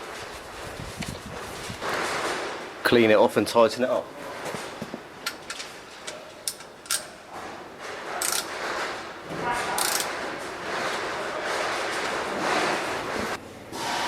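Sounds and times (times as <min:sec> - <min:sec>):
ratchet clicking: 0:08.2 - 0:08.5, 0:09.8 - 0:10.1.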